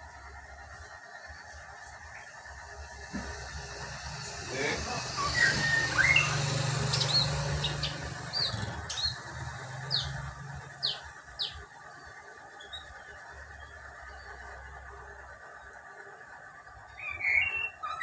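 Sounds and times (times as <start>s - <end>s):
bird chirps and whistles: 3.4s - 9.2s, 17.0s - 18.0s.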